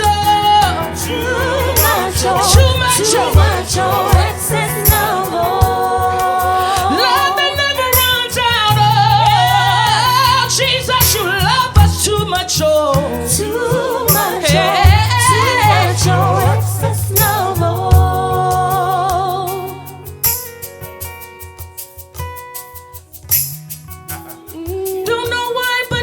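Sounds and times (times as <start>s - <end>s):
bass keyboard and drums: 0.0s - 6.9s
drum and cymbal hits: 0.0s - 8.7s, 11.0s - 18.4s, 20.2s - 22.2s
gospel singers holding notes: 0.0s - 20.1s.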